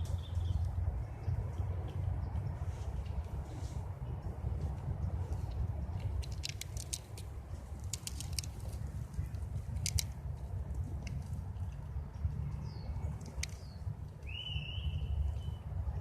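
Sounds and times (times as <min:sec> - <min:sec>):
squirrel gnawing nut shell: 0:05.3 - 0:11.8.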